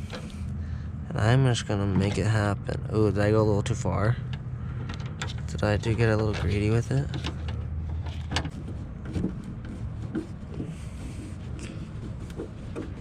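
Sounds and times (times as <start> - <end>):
clicks and knocks of parts handled: 4.2 - 5.5, 6.2 - 9.3.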